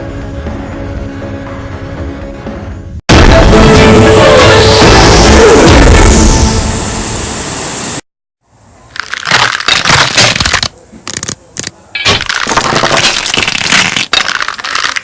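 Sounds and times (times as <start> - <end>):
music: 0.0 - 7.3
loud crackling and crunching: 8.9 - 15.0.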